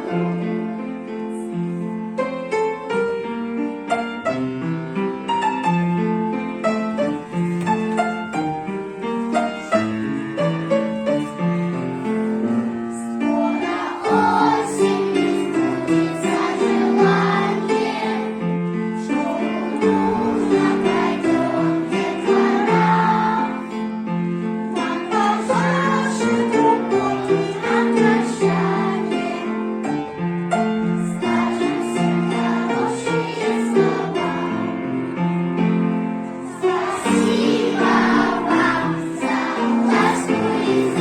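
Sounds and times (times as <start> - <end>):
people singing: 0.0 - 1.5, 12.0 - 24.0, 24.7 - 29.8, 31.0 - 35.2, 36.4 - 41.0
piano music: 0.0 - 41.0.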